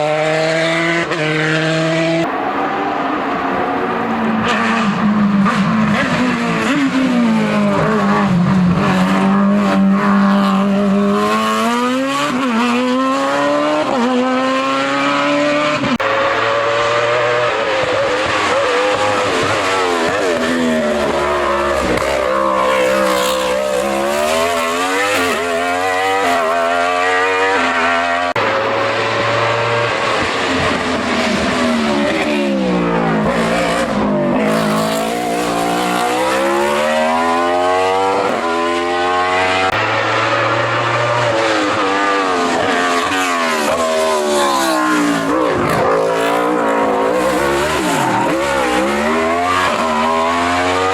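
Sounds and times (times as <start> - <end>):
race car engine revving: 0.0 - 50.9.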